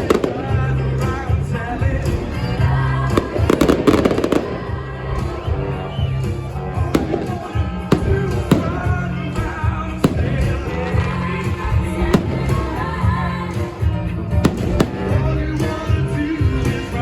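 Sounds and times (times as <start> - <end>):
fireworks bangs: 0.0 - 17.0
fireworks crackling: 0.0 - 17.0
music with steady bass beat: 0.0 - 17.0.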